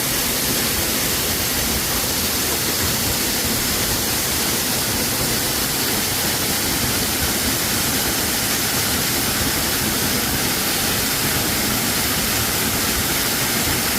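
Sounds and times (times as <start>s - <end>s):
waterfall rushing over rock: 0.0s - 13.9s.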